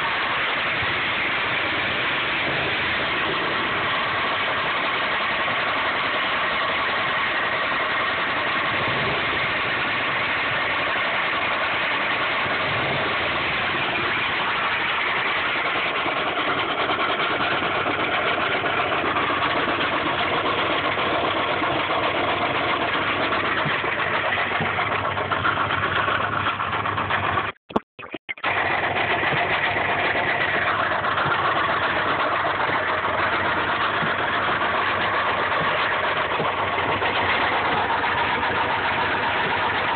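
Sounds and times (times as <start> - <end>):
car engine with rod knock: 21.8 - 27.3, 29.1 - 39.9.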